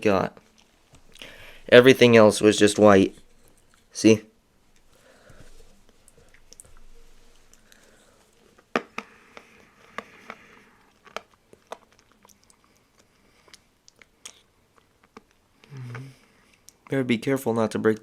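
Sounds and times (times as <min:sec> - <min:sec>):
hard candy crunching: 0:05.8 - 0:17.0.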